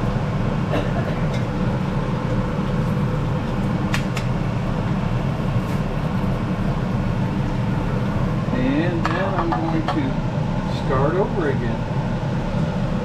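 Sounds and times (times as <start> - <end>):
deep fryer rumbling: 0.0 - 13.0.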